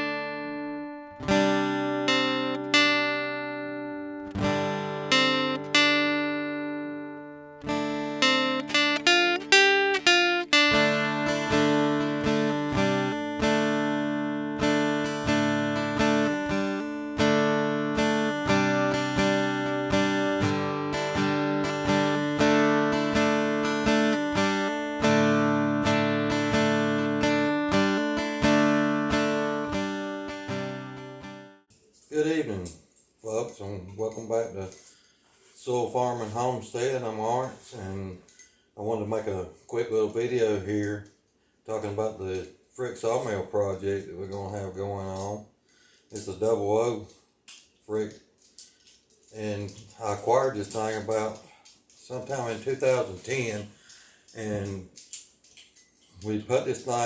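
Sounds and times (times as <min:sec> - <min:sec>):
acoustic guitar picking: 0:00.0 - 0:31.7.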